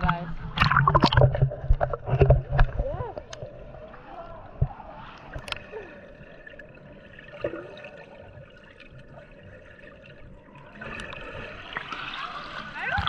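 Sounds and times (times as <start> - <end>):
small water splashes: 0.0 - 13.0
water sloshing and lapping: 0.0 - 13.0.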